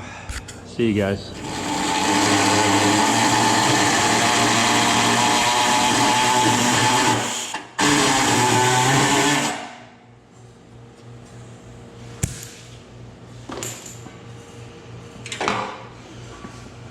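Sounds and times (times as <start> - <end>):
power tool motor whining: 1.4 - 9.7.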